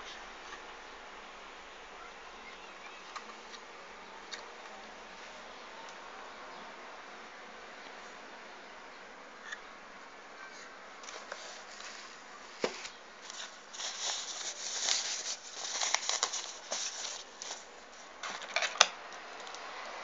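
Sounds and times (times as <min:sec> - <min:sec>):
packaging rustling: 0:11.0 - 0:19.6.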